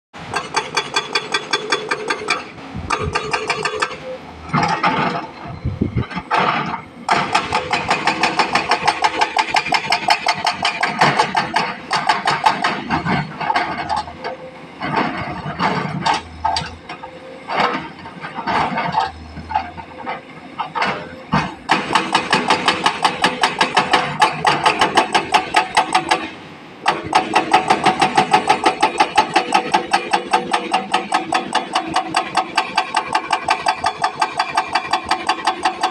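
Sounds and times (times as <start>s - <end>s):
hydraulic breaker hammering rock: 0.3s - 5.2s, 6.1s - 14.1s, 20.7s - 35.9s.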